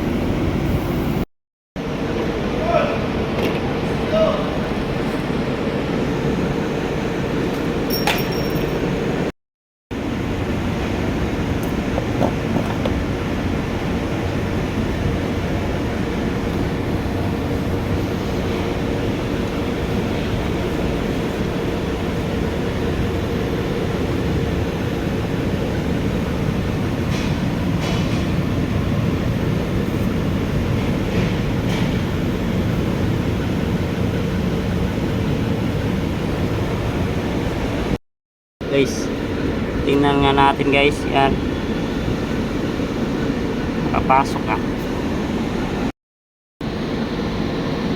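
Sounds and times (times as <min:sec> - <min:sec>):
engine running steadily: 0:10.0 - 0:38.0, 0:38.6 - 0:45.9.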